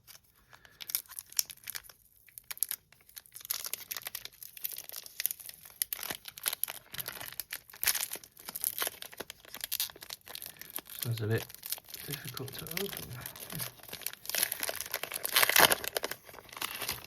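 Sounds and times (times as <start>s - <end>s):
foil wrapper crinkling and tearing: 0.0s - 17.0s.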